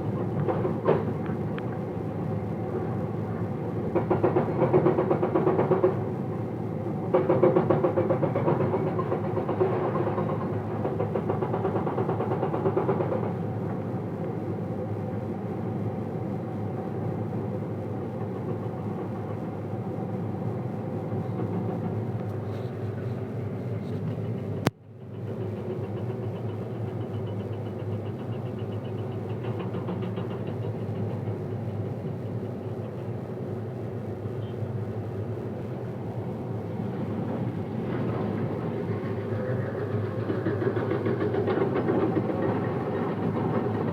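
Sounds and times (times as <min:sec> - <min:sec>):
excavator diesel engine running: 0:00.0 - 0:43.9.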